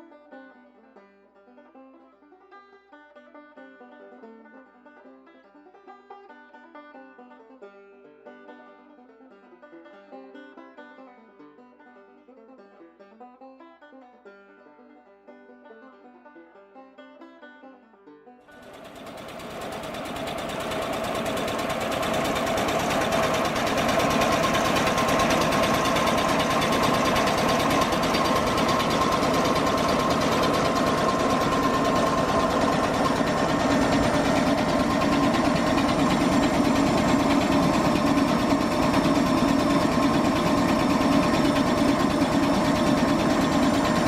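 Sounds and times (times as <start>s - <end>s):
dynamo running with clatter and whine: 18.5s - 44.0s.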